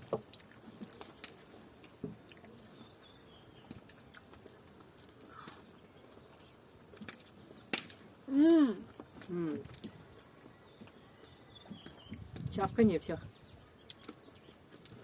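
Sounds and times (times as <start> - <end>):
people chewing noisily: 0.0 - 15.0
lip smacks: 3.7 - 5.8, 13.8 - 15.0.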